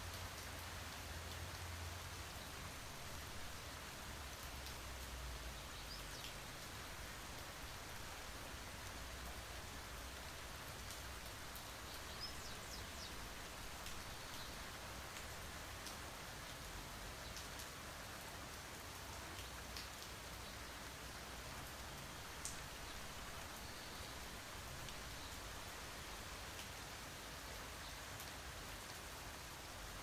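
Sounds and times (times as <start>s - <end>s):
steady rain: 0.0s - 30.0s
raindrop ticks: 4.4s - 5.2s, 15.1s - 16.0s, 19.3s - 20.2s, 22.4s - 22.7s.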